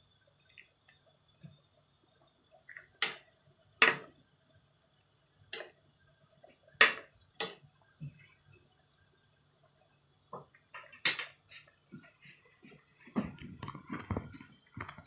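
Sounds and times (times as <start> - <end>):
kitchen utensils and dishes clinking: 10.8 - 11.7.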